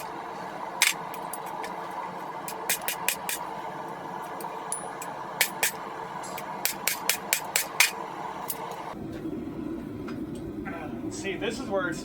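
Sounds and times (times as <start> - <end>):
steady background noise: 0.0 - 12.0
hammer striking steel on anvil: 6.4 - 8.0.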